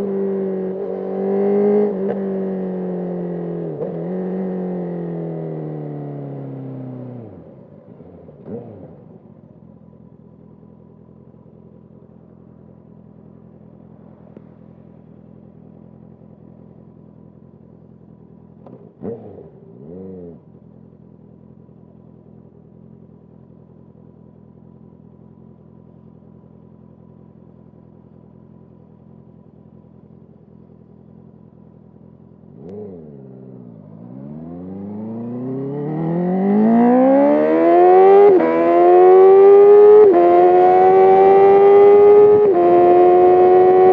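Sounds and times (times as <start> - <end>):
motorcycle revving and pulling away: 0.0 - 43.9
motorcycle engine idling: 9.0 - 34.0.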